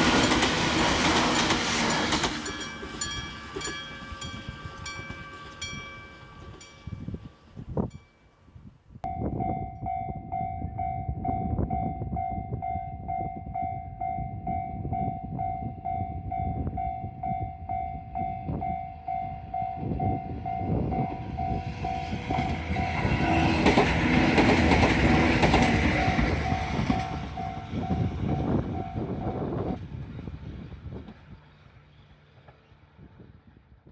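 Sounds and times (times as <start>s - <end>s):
train wheel and running noise: 0.0s - 8.0s, 9.4s - 33.8s
level crossing pulsed ringing: 1.8s - 8.3s, 9.1s - 23.4s.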